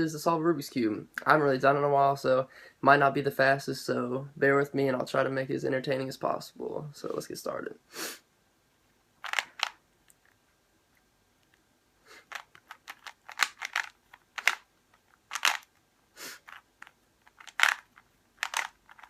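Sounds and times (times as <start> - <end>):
puzzle cube clicking: 9.2 - 10.3, 12.2 - 19.0.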